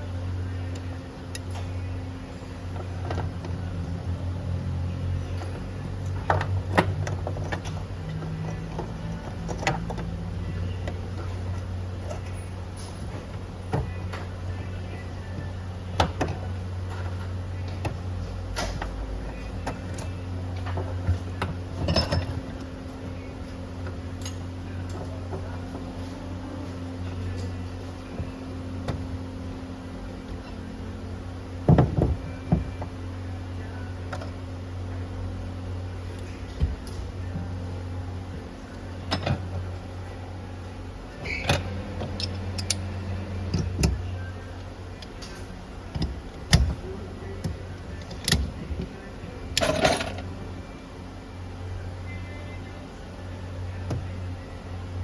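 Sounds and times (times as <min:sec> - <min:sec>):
steady low hum: 0:00.0 - 0:55.0
metal tools clinking: 0:21.8 - 0:22.4, 0:49.6 - 0:50.3.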